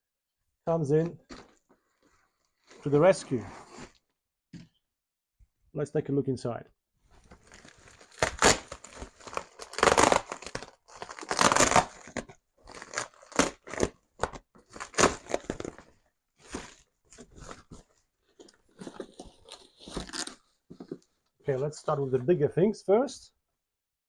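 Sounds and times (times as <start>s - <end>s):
bag tearing and crinkling: 7.4s - 17.8s, 18.7s - 20.5s.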